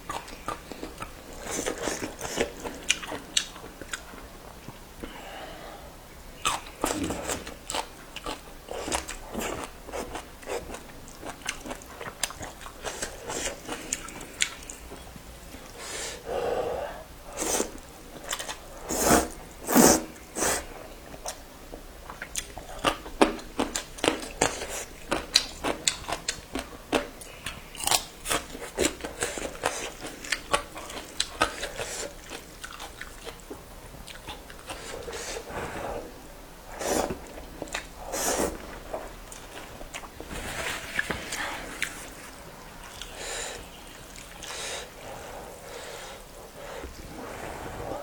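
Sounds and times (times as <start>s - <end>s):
person chewing crunchy food: 6.4s - 15.8s, 22.1s - 35.6s, 36.7s - 44.7s.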